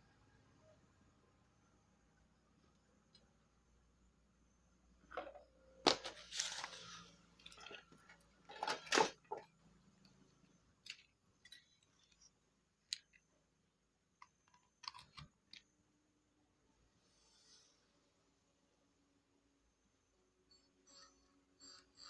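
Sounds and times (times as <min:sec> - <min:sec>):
rustling scrapes: 0:06.0 - 0:09.4.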